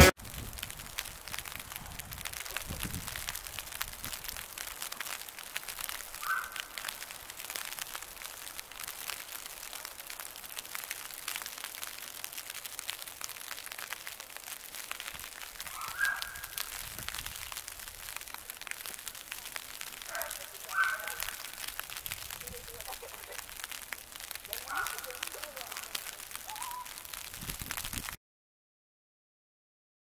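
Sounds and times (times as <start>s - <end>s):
fine crackling ticks: 0.5s - 28.2s
short bird calls: 6.2s - 6.7s, 15.7s - 16.6s, 26.5s - 27.0s.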